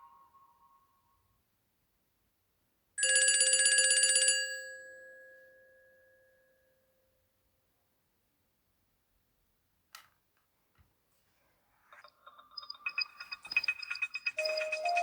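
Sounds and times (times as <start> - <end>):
old telephone bell ringing: 3.0 - 5.2, 12.7 - 15.0.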